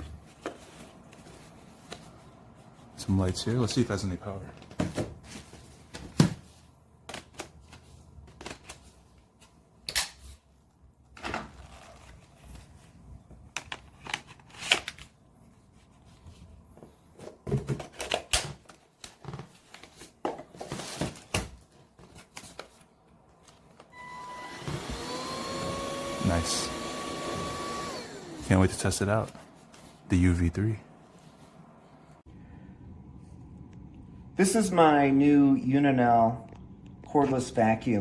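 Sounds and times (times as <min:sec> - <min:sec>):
vacuum motor whining: 0:24.0 - 0:28.5.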